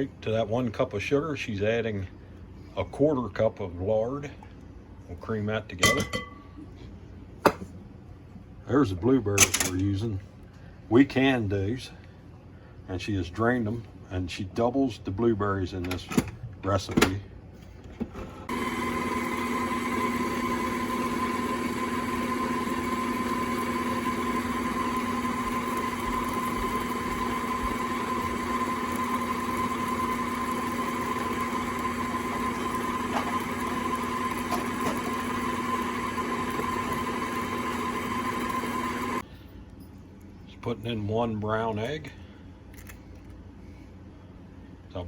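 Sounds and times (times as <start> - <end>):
electric mixer running: 18.5 - 39.2.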